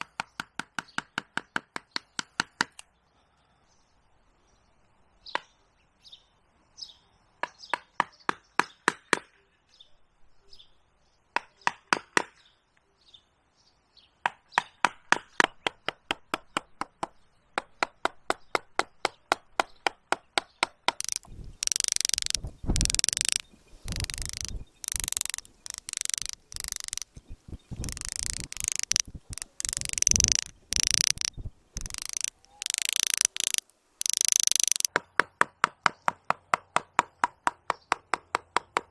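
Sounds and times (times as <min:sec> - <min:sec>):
carving tools tapping wood: 0:00.0 - 0:02.8, 0:14.6 - 0:38.9
carving tools scraping wood: 0:21.0 - 0:34.9
faint bird chirps: 0:21.0 - 0:34.9.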